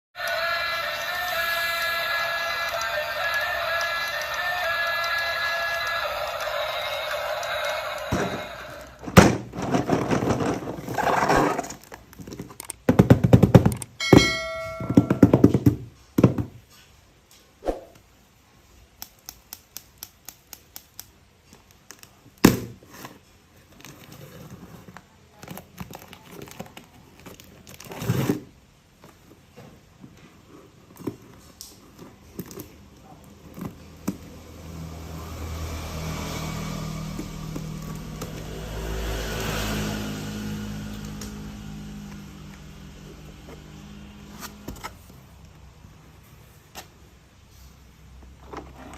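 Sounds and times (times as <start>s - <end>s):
plastic parts clicking and thunking: 9.0s - 14.0s.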